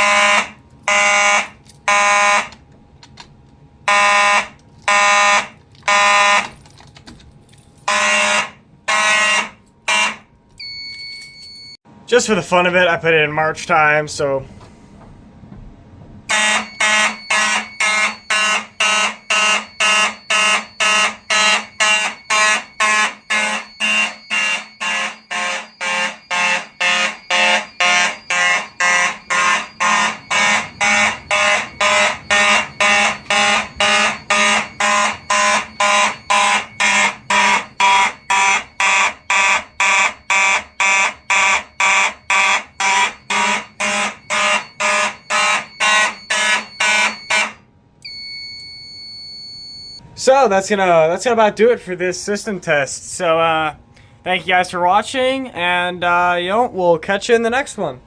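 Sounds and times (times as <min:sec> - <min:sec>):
fire alarm horns blaring: 0:00.0 - 0:02.7, 0:03.8 - 0:06.6, 0:07.6 - 0:11.8, 0:16.3 - 0:50.3.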